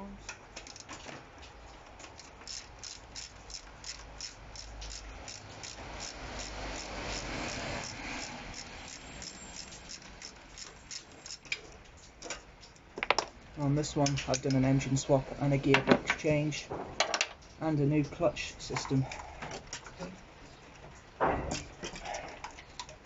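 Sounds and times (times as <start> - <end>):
socket ratchet clicking: 2.2 - 11.6.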